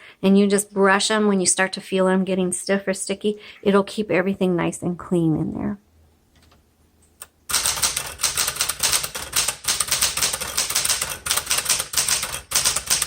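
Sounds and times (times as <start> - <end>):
manual typewriter typing: 7.5 - 13.0.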